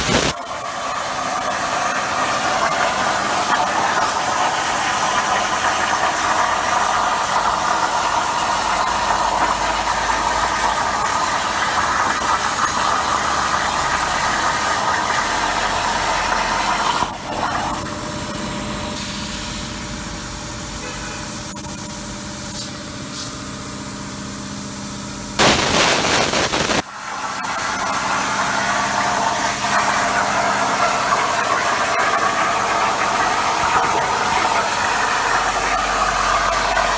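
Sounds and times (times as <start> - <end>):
plasma cutter torch hissing: 0.0 - 0.4, 19.0 - 26.8
machine hum with steady tones: 23.6 - 27.2.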